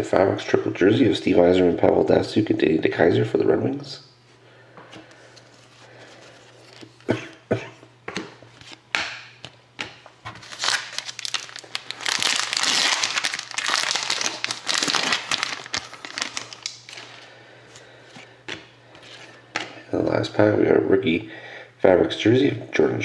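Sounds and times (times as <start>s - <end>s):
cards clicking and tapping: 8.1s - 10.4s
wrapper crinkling: 10.3s - 17.3s.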